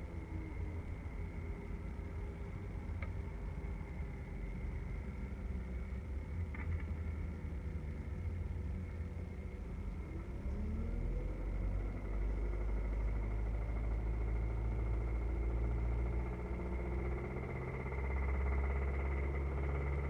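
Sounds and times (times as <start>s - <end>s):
car engine running: 0.0s - 20.0s
engine knocking or ticking: 11.2s - 20.0s.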